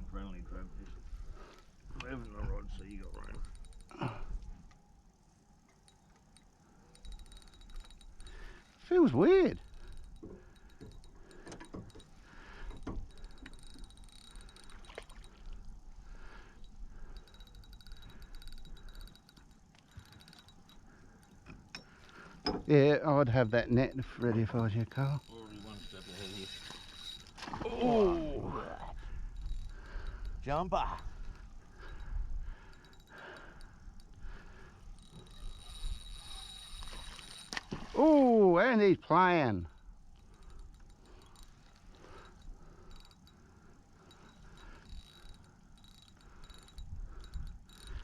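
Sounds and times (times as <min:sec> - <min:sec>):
steady high whine: 0:00.0 - 0:48.0
fishing reel clicking: 0:01.6 - 0:28.2, 0:28.8 - 0:38.0, 0:39.6 - 0:48.0.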